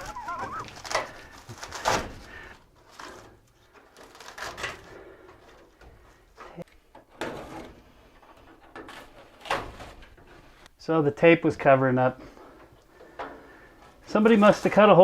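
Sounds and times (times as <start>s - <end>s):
metal pipe squealing: 0.0s - 0.8s
pipe scraping and knocking: 6.7s - 10.7s.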